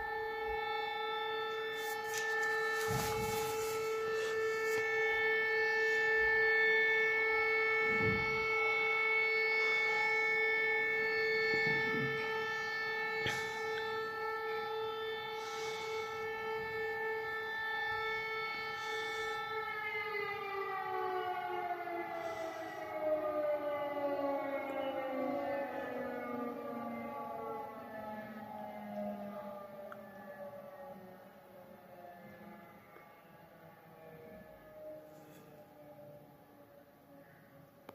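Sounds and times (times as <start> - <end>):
air raid siren: 0.0 - 37.9.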